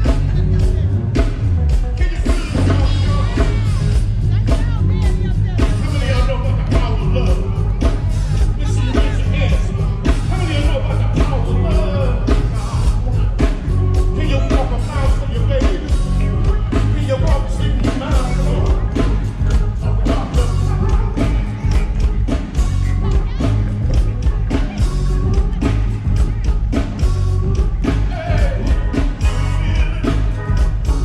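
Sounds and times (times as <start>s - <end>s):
band playing: 0.0s - 31.0s
steady drum beat: 0.0s - 31.0s
person singing: 1.9s - 31.0s.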